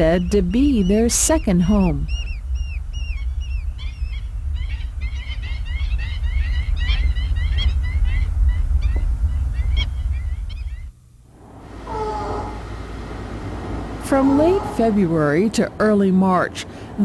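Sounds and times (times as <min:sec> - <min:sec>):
birds calling: 0:00.0 - 0:17.0
low rumble: 0:00.0 - 0:17.0.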